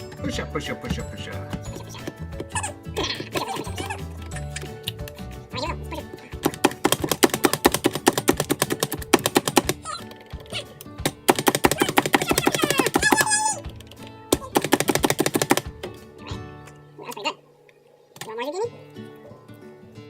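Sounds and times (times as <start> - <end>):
background music: 0.0 - 20.0
food chopper clacking: 6.4 - 9.8, 11.0 - 13.1, 14.6 - 15.8.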